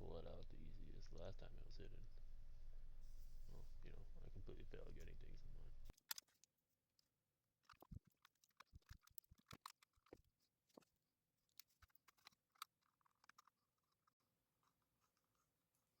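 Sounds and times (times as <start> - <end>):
small screws clicking on plastic: 5.9 - 14.1.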